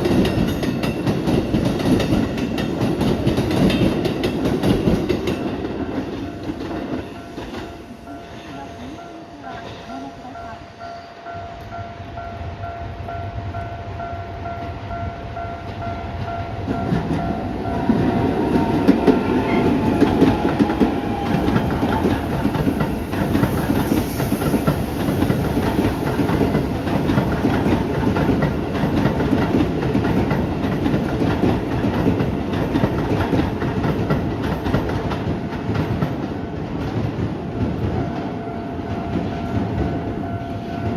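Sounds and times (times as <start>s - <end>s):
electric train rolling past: 0.0s - 40.9s
level crossing warning bell: 37.8s - 40.9s.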